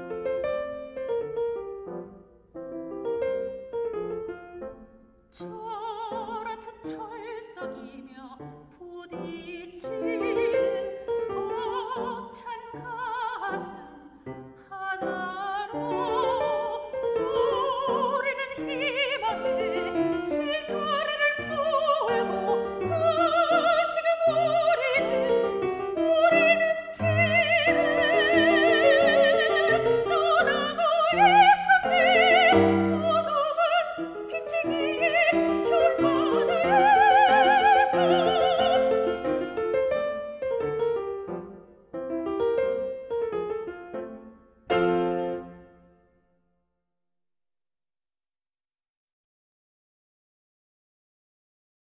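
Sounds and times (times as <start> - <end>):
piano accompaniment: 0.0 - 46.0
soprano singing with vibrato: 4.8 - 40.7.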